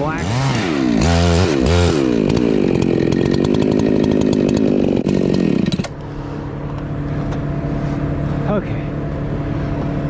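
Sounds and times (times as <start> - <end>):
chainsaw revving and cutting wood: 0.0 - 6.1.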